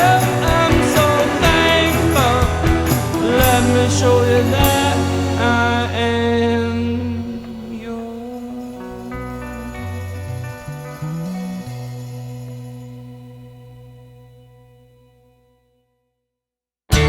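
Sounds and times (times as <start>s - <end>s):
rock song with sung vocal: 0.0s - 12.8s.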